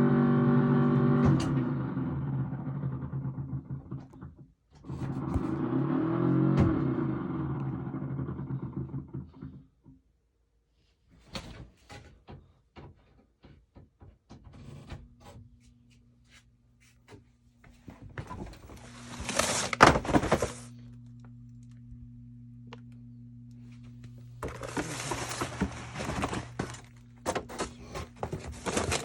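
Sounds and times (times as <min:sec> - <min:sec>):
refrigerator hum: 0:00.0 - 0:09.8, 0:13.0 - 0:29.0.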